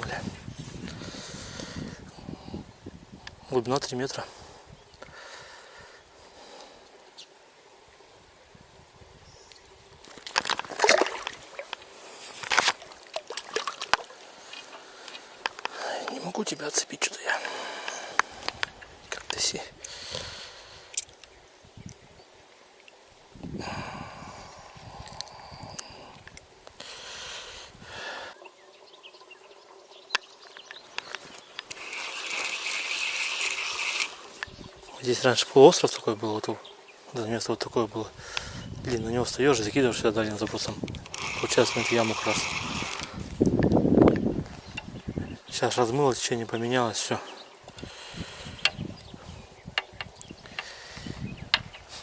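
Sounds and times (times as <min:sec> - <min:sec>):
rustling of fishing tackle: 0:09.6 - 0:16.5, 0:30.5 - 0:36.1, 0:40.0 - 0:45.0
fish thrashing and splashing water: 0:10.2 - 0:11.8, 0:12.4 - 0:14.2
fishing reel whirring: 0:31.6 - 0:34.5, 0:40.9 - 0:43.3.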